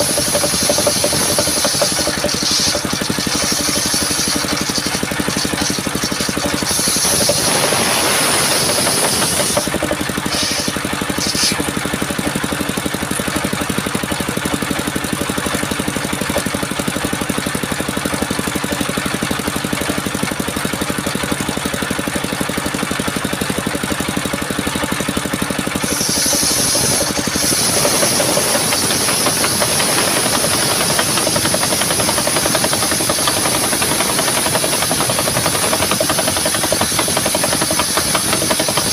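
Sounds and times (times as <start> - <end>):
saw blade cutting wood: 0.0 - 11.8, 25.5 - 38.9
sawmill engine running: 0.0 - 38.9.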